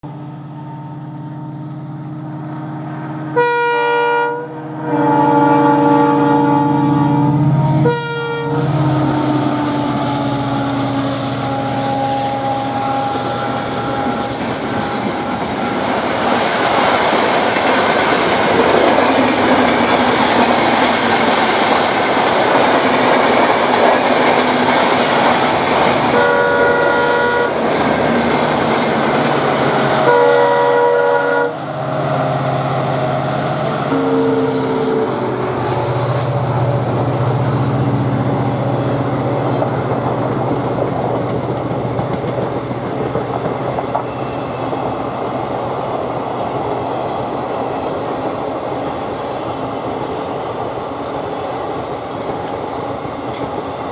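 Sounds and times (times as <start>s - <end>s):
diesel locomotive engine: 0.0s - 53.9s
locomotive horn blasts: 0.6s - 16.2s, 25.8s - 27.9s, 28.6s - 40.1s
coaches clickety-clack rolling: 13.3s - 26.4s, 37.7s - 53.9s.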